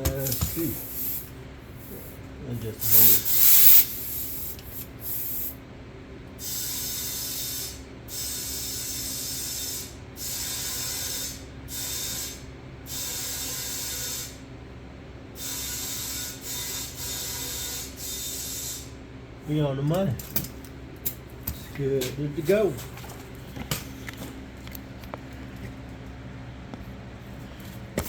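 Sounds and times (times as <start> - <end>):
steady low hum: 0.0 - 28.0
compressed air hissing into tire: 0.4 - 2.2, 2.8 - 5.6.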